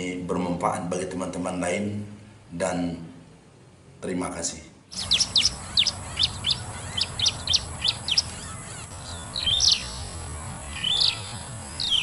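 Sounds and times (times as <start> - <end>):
small bird chirping: 4.9 - 12.0.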